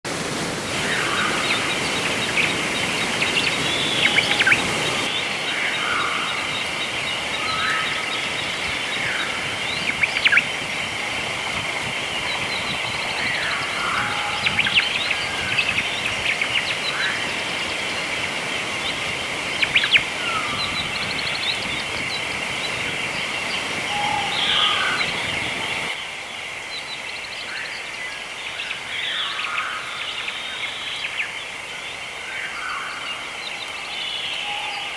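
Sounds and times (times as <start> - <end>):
steady high-pitched drone: 0.7 - 26.0
birds chirping: 0.7 - 34.9.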